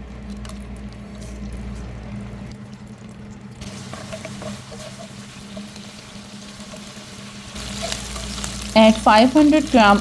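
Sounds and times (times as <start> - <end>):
spices sizzling in hot oil: 2.8 - 10.0.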